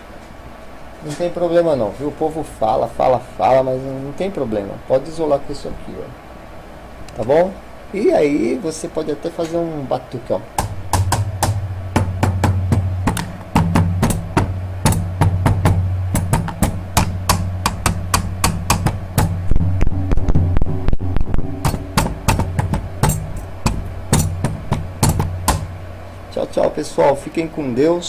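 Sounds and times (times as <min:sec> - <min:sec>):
steady low hum: 0:00.0 - 0:28.0
hand drumming on hard objects: 0:10.5 - 0:26.0.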